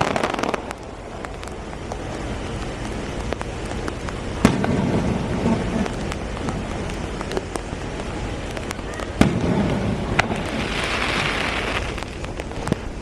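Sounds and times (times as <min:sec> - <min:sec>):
firework bang: 0:00.0 - 0:01.4, 0:04.4 - 0:07.5, 0:08.7 - 0:12.9
fireworks crackling and popping: 0:00.0 - 0:13.0
rain hissing: 0:00.0 - 0:13.0.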